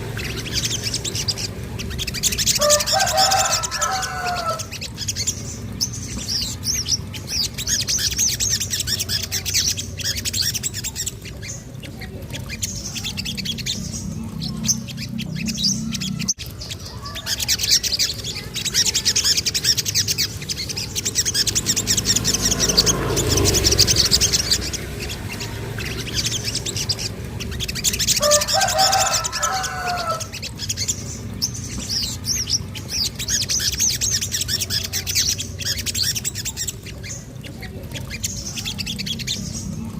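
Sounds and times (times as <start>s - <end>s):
bird chattering trills: 0.0s - 39.9s.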